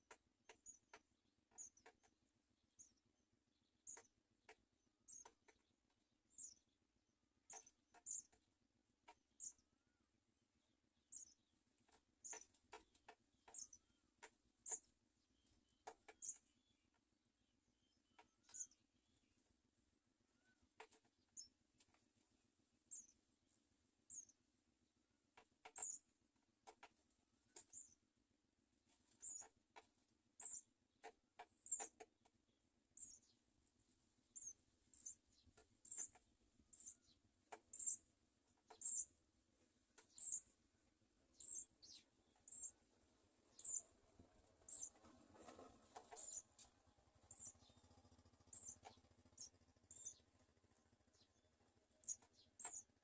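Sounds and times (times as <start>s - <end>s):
nestlings begging squeaks: 13.5s - 13.8s, 18.4s - 18.8s, 25.8s - 26.0s, 29.2s - 29.5s, 30.4s - 30.6s, 31.6s - 32.0s, 34.4s - 38.0s, 38.7s - 39.1s, 40.0s - 40.5s, 41.4s - 42.8s, 43.5s - 43.9s, 44.6s - 50.2s, 51.1s - 53.0s.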